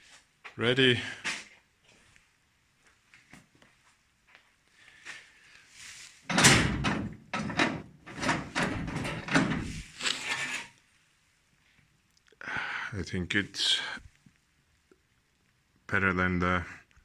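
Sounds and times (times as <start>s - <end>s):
hard objects knocking and clattering: 6.3s - 10.7s.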